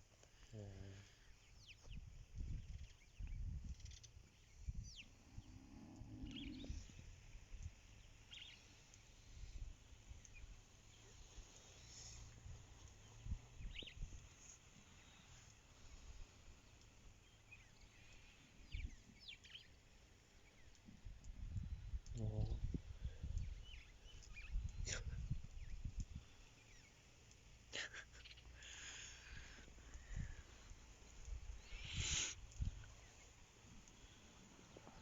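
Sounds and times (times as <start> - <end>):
faint high bird chirps: 1.4 - 9.0, 10.1 - 15.6, 20.4 - 27.0, 31.5 - 33.4
low outdoor rumble: 2.0 - 27.7.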